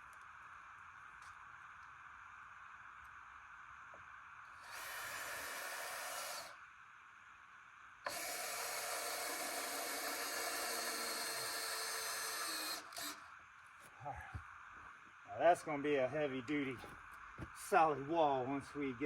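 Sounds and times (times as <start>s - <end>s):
power drill running: 4.5s - 6.6s, 8.0s - 13.3s.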